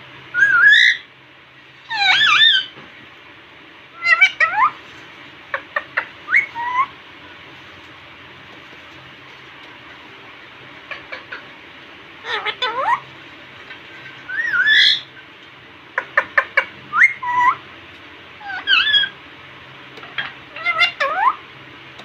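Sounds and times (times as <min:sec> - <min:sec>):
parrot squawking and whistling: 0:00.3 - 0:01.1, 0:01.9 - 0:02.8, 0:03.9 - 0:04.8, 0:05.5 - 0:07.0, 0:12.2 - 0:13.1, 0:14.2 - 0:15.2, 0:16.0 - 0:17.6, 0:18.4 - 0:19.2, 0:20.5 - 0:21.4.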